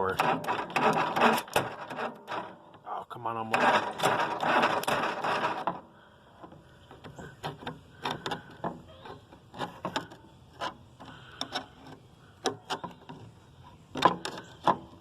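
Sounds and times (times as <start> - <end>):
light clicks and knocks: 6.4 - 15.0.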